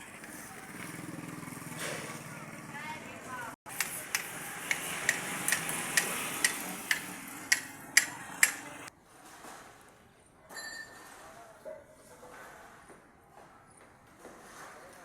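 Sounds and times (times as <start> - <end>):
sharp evenly spaced ticks: 3.7 - 8.7.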